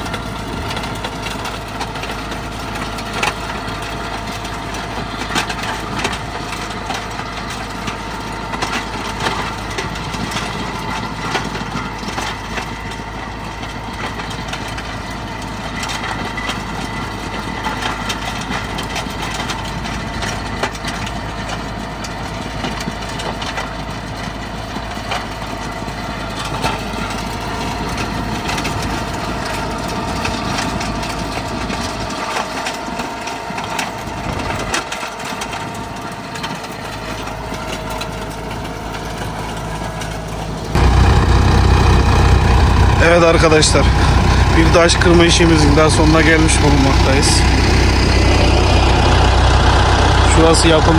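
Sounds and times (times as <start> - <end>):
tractor engine under load: 0.0 - 50.9
stones cracking in crusher: 40.8 - 47.9.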